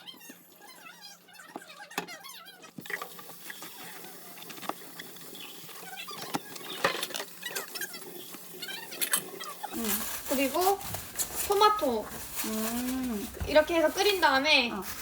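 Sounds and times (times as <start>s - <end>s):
utensils and dishes clicking: 2.8s - 15.0s.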